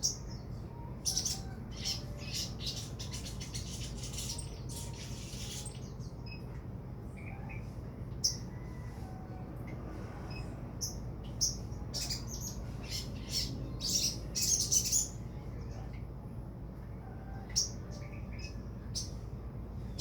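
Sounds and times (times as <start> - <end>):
bird chirping: 0.0 - 6.4
steady low hum: 0.0 - 20.0.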